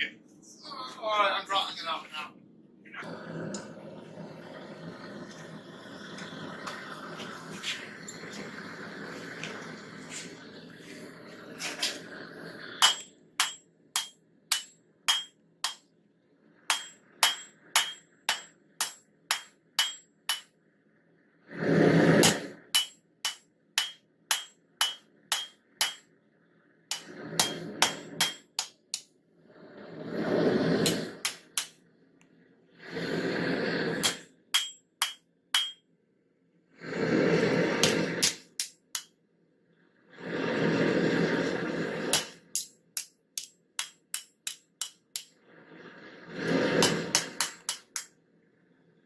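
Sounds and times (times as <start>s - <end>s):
hammer striking metal on anvil: 12.8s - 15.8s, 16.7s - 20.5s, 22.2s - 26.0s, 26.9s - 29.1s, 30.8s - 31.8s, 34.0s - 35.8s, 42.1s - 45.3s, 46.8s - 48.1s.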